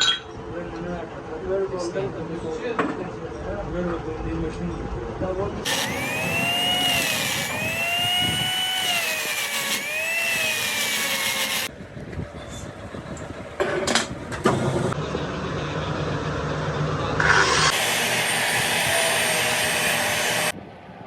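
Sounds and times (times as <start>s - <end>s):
power tool whining: 5.7s - 11.7s, 17.2s - 20.6s.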